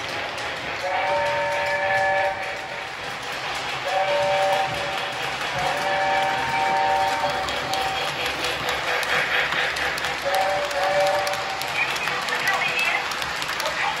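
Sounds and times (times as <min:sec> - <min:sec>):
steady running noise: 0:00.0 - 0:14.0
model train steam whistle: 0:00.8 - 0:02.7, 0:03.9 - 0:04.9, 0:05.6 - 0:07.9, 0:10.3 - 0:11.6.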